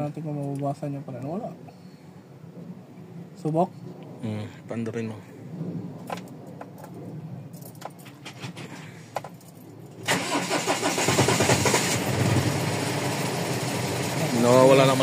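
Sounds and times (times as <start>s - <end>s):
diesel engine starting and running: 10.0s - 15.0s.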